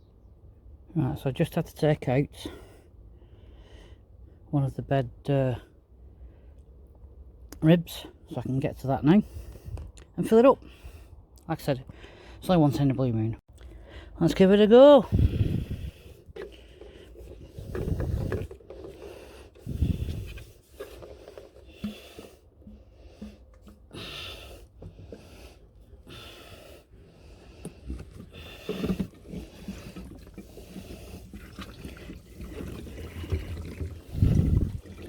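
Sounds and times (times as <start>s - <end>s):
plastic hose rubbing and clicking: 15.3s - 35.0s.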